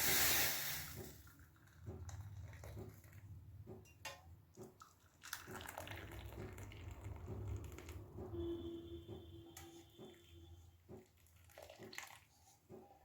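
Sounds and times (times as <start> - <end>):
liquid dripping and trickling: 0.9 - 12.8.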